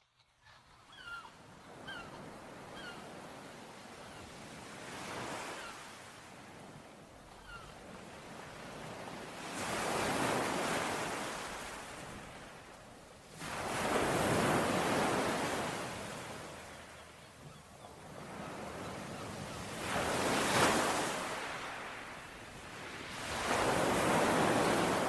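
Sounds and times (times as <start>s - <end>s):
faint bird chirp: 0.0s - 3.2s, 7.3s - 7.8s, 16.2s - 19.8s
ocean waves breaking on shore: 1.3s - 25.0s.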